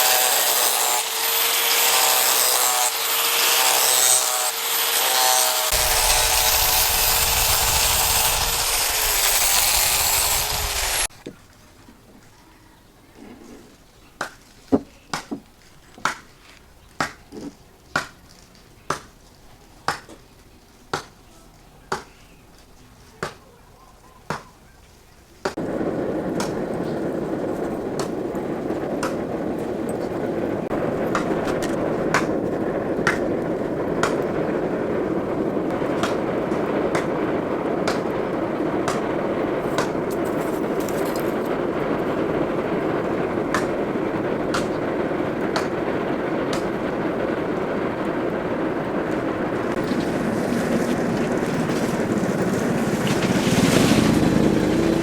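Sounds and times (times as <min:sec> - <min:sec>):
loud steady machine noise: 0:00.0 - 0:11.1.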